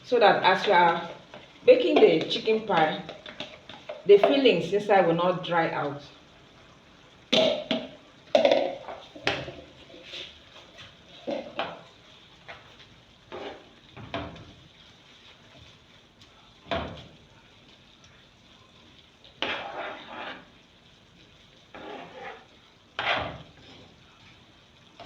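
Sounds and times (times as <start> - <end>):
spoon scraping and knocking pot: 19.4 - 20.5, 21.7 - 23.8.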